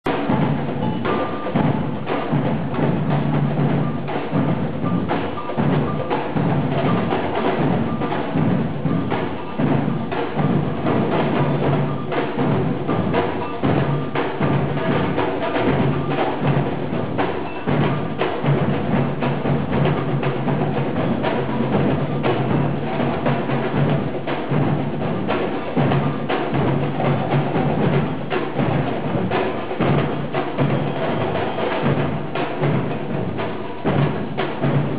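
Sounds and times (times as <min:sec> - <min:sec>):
percussion music drums: 0:00.0 - 0:34.9.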